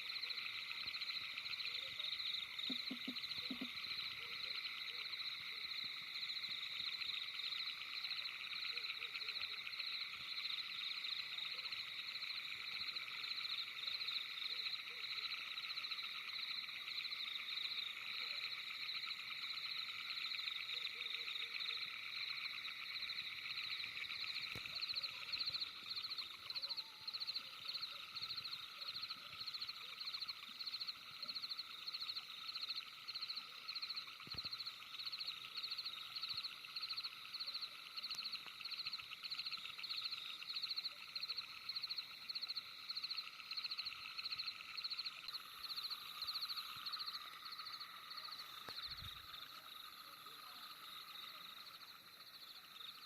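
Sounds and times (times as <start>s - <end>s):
frogs trilling: 0.0s - 53.0s
high pulsing frog call: 0.0s - 53.0s.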